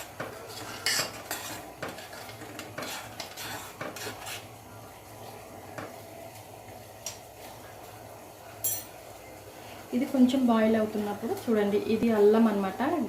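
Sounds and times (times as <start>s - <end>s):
spoon clinking and scraping pot: 0.0s - 4.5s.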